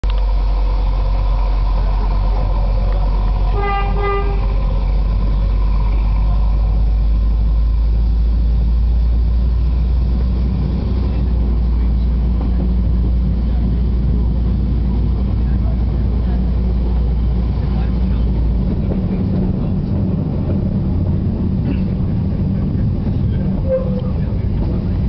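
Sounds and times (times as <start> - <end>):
train rumbling: 0.0 - 25.0
locomotive horn toots: 3.4 - 4.8, 23.5 - 24.4.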